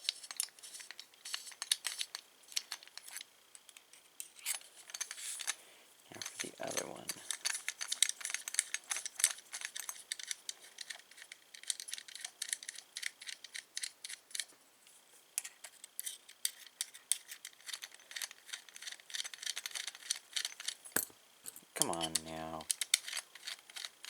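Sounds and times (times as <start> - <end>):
screwdriver clicking and scraping: 21.8 - 24.0.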